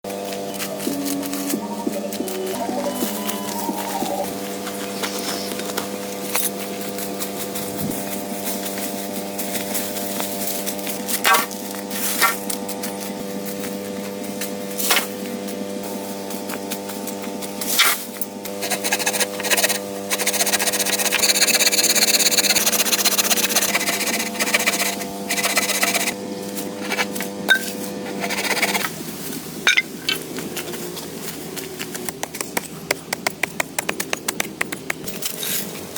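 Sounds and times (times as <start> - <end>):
constant low hum: 0.1 - 35.9
rasping on wood: 18.6 - 26.2, 28.1 - 28.8.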